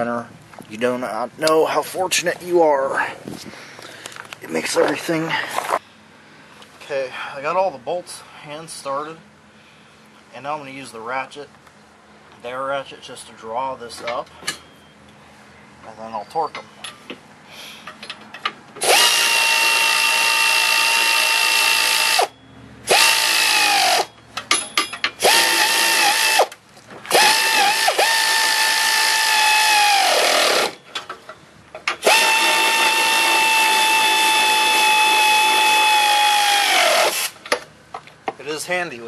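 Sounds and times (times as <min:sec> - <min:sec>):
power ratchet motor whine: 0:18.8 - 0:22.3, 0:22.9 - 0:24.1, 0:25.2 - 0:30.8, 0:32.0 - 0:37.4.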